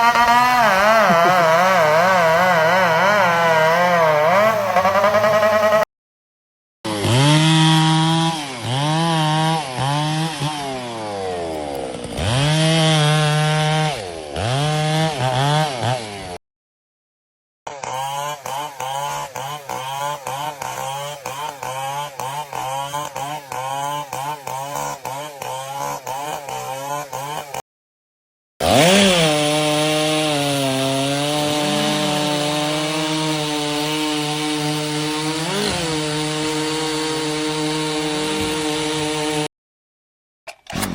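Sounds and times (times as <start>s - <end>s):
chainsaw revving: 0.0s - 5.9s, 6.9s - 16.4s, 17.7s - 27.6s, 28.6s - 39.5s, 40.6s - 40.9s.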